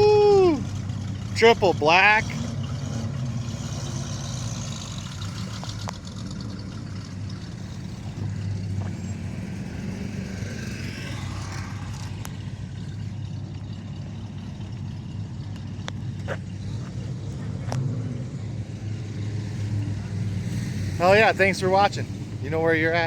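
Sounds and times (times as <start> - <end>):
car engines rolling past: 0.0 - 23.0.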